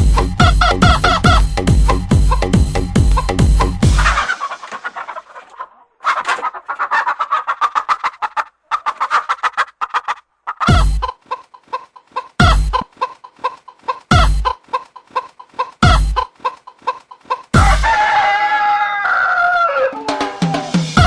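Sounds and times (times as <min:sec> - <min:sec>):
crow-like call sliding down: 0:04.0 - 0:07.3.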